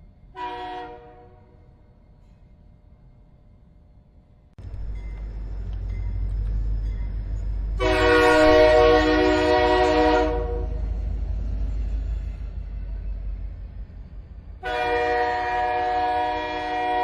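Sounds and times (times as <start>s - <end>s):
train rumbling: 0.0s - 17.0s
train horn blast: 0.3s - 1.8s, 7.8s - 11.0s, 14.6s - 17.0s.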